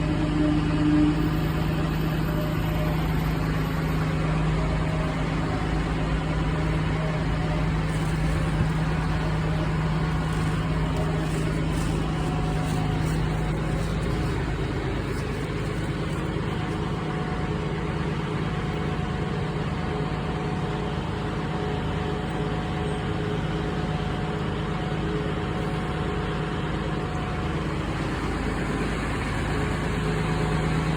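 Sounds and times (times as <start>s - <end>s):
low mechanical drone: 0.0s - 30.9s.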